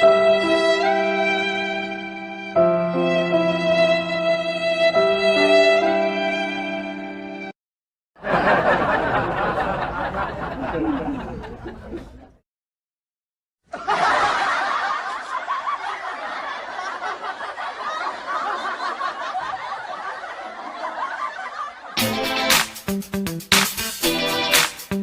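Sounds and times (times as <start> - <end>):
laughter: 8.2 - 12.4, 13.7 - 22.0.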